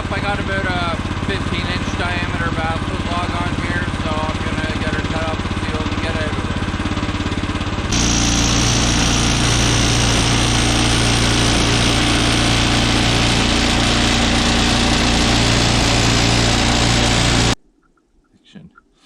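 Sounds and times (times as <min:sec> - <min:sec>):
sawmill engine running: 0:00.0 - 0:17.6
band saw cutting log: 0:07.8 - 0:17.6.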